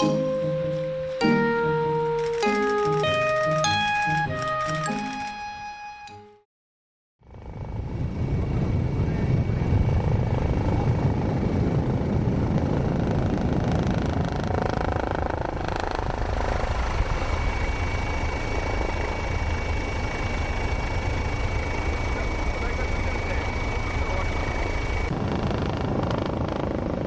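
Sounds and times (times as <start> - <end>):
helicopter engine running: 2.2 - 5.6, 7.2 - 27.0
faint high whine: 16.3 - 25.1.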